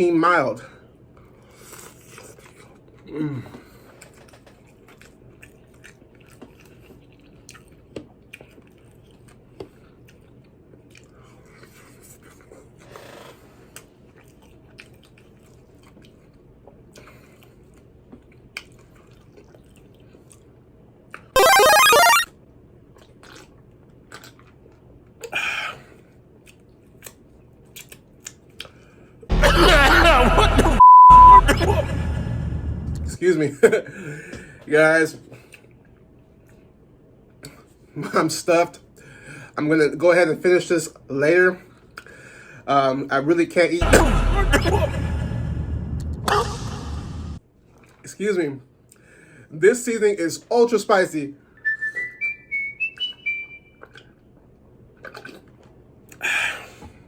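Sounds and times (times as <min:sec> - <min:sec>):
chewing and crunching: 0:01.5 - 0:03.1, 0:03.7 - 0:21.3, 0:22.8 - 0:25.3, 0:26.3 - 0:28.9, 0:47.7 - 0:48.1, 0:53.8 - 0:56.2
electronic ringing tone: 0:21.4 - 0:22.3, 0:30.8 - 0:31.4.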